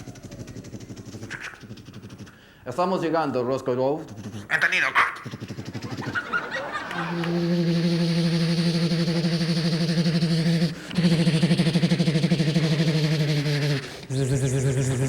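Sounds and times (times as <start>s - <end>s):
man imitating aircraft engine: 6.9s - 15.0s.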